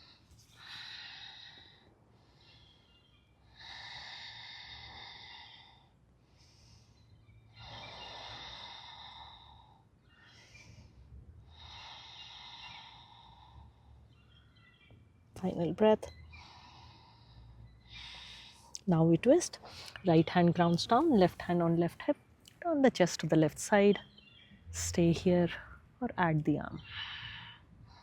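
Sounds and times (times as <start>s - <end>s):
person breathing slowly: 0.0s - 14.2s, 16.2s - 18.8s, 26.8s - 28.0s.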